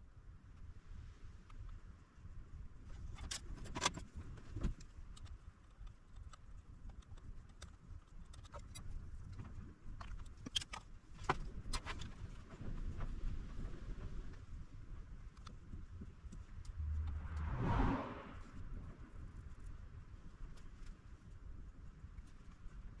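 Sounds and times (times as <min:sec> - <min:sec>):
steady low rumble: 0:16.4 - 0:18.8.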